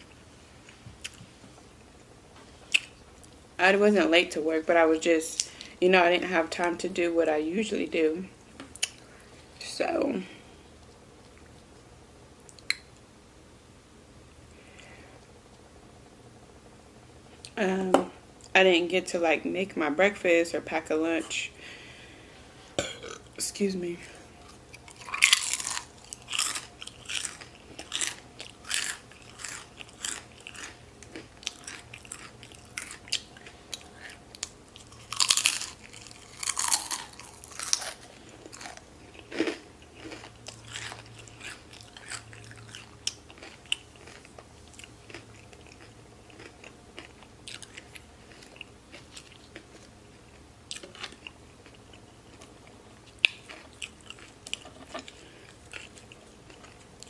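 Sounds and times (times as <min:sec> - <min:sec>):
person chewing food: 0:00.0 - 0:01.4, 0:02.6 - 0:03.4, 0:24.3 - 0:57.0.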